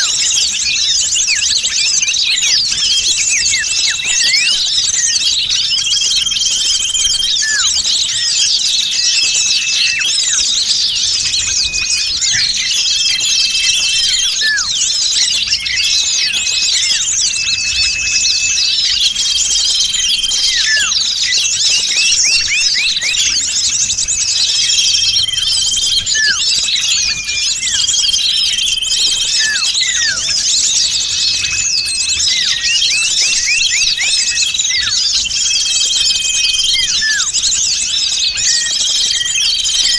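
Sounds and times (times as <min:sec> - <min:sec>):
small birds chirping chorus: 0:00.0 - 0:39.9
short held bird whistles: 0:01.3 - 0:05.1, 0:20.4 - 0:23.3, 0:36.2 - 0:37.4.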